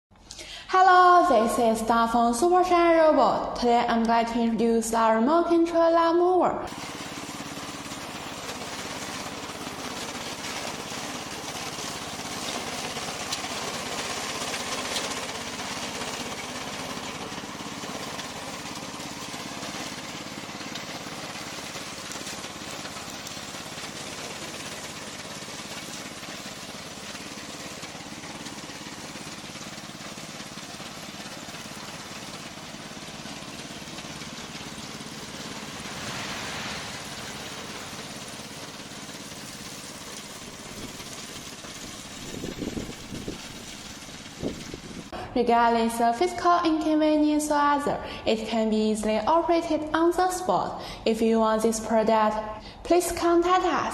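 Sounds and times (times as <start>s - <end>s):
lawn mower engine running: 6.7s - 45.3s.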